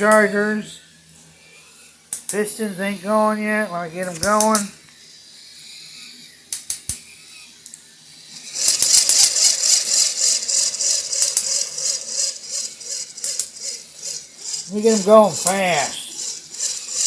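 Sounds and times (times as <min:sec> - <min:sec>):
clicks: 0:04.0 - 0:04.7
rapid plastic clatter: 0:08.6 - 0:15.0.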